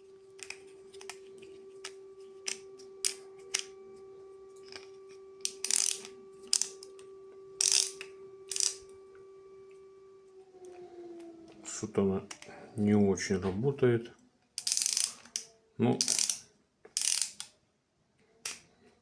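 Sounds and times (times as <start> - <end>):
steady hum: 0.0 - 13.8
ratchet rasping: 5.4 - 6.8, 7.6 - 8.8, 14.6 - 15.4, 16.0 - 16.4, 17.0 - 17.5
screwdriver clicks: 14.6 - 16.4, 17.0 - 17.5.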